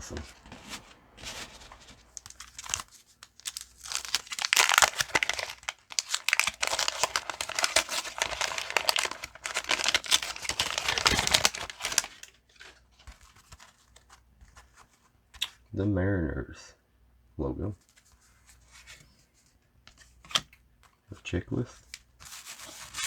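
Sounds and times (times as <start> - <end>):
wax paper wrapper crinkling and tearing: 0.0 - 14.2, 21.6 - 23.0.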